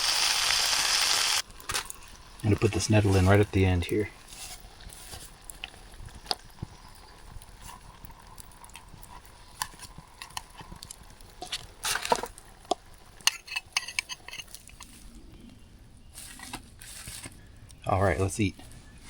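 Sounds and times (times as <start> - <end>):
couscous simmering: 0.0 - 17.9
metal spoon clinking in pot: 13.2 - 14.6.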